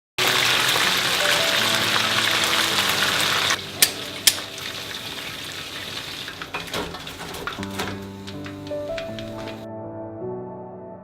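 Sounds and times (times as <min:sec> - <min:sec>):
background music: 0:00.2 - 0:05.9, 0:07.6 - 0:11.0
hot oil sizzling: 0:00.2 - 0:09.6
sharp clicks: 0:03.8 - 0:04.4.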